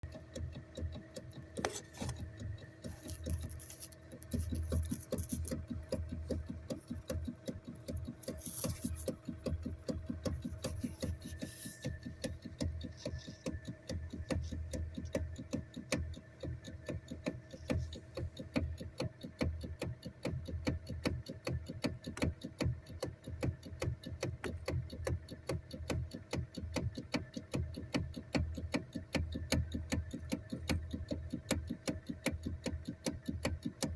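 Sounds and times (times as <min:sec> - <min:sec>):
faint steady hum: 0:00.1 - 0:21.0
fast ticking knock: 0:02.2 - 0:33.9.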